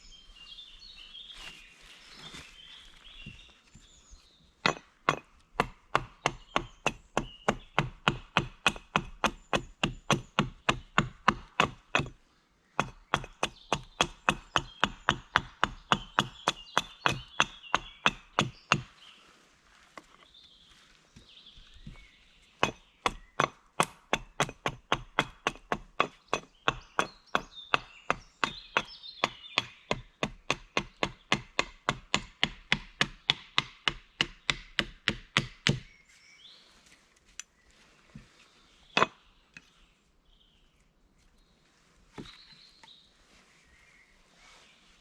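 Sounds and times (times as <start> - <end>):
wood being chopped: 4.6 - 12.2, 12.8 - 19.0, 22.6 - 35.9, 39.0 - 39.2.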